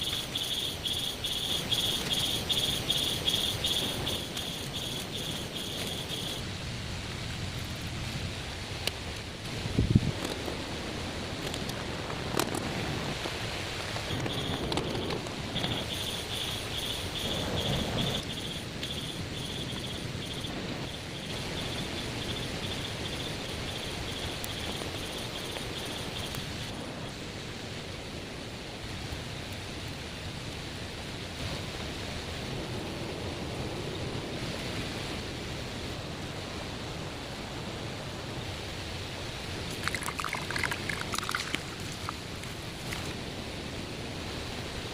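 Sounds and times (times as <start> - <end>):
insect trilling: 0.0 - 6.4, 14.0 - 26.8, 39.7 - 43.2
steady rushing noise: 0.0 - 44.9.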